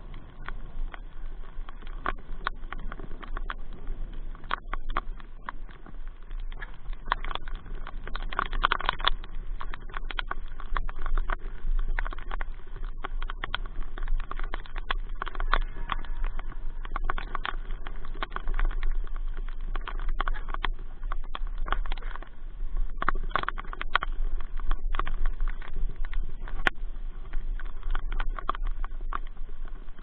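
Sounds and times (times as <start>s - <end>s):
rain falling: 0.0s - 30.0s
sharp taps of raindrops: 0.0s - 30.0s
steady low hum: 0.0s - 30.0s.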